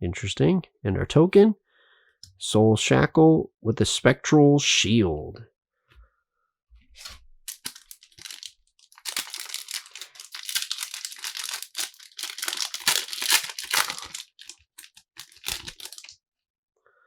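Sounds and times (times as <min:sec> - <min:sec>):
foil wrapper tearing and crinkling: 0:07.0 - 0:16.2.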